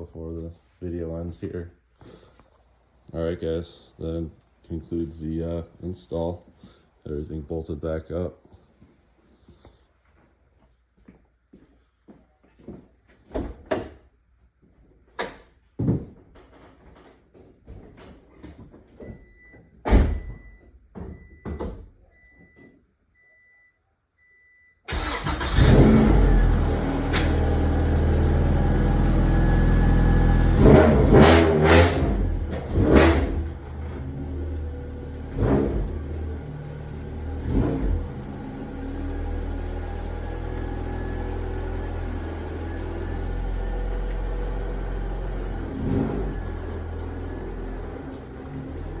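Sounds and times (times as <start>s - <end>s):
car engine starting and revving: 24.9s - 49.0s.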